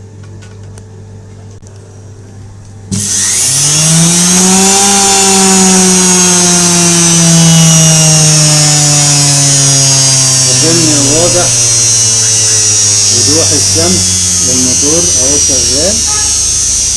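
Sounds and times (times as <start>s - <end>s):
electric motor whining: 2.9s - 16.9s
carbon brushes hissing: 10.6s - 16.9s.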